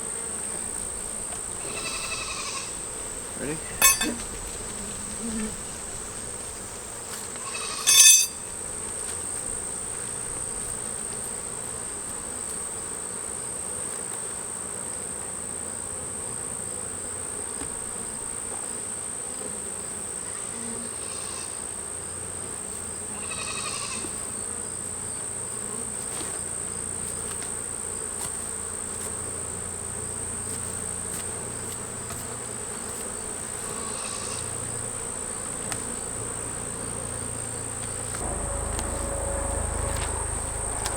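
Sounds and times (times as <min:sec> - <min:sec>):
honeybees buzzing: 0:00.0 - 0:21.0, 0:24.0 - 0:40.9
hive parts clattering: 0:03.5 - 0:04.7
steady high tone: 0:38.2 - 0:40.9.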